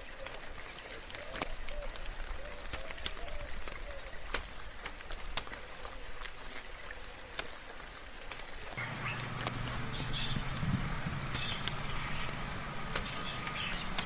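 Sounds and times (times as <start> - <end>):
raindrops ticking: 0.0 - 14.0
soft rainfall: 0.0 - 14.0
low hum: 8.8 - 14.0.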